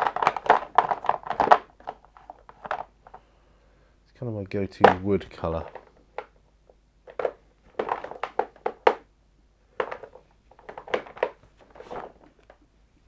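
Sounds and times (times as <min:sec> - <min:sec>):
plastic paint pots clicking: 0:00.0 - 0:03.0, 0:09.8 - 0:12.6.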